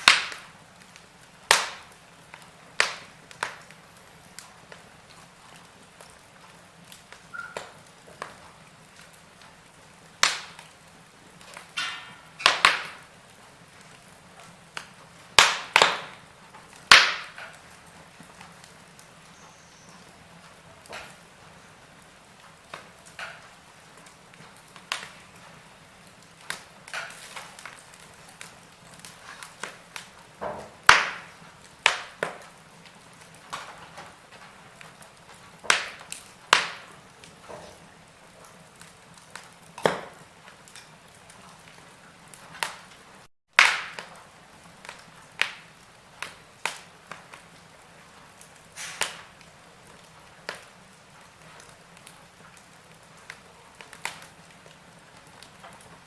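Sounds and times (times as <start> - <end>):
faint steady hiss: 0.0 - 43.3
wood fire crackling and popping: 0.0 - 56.0.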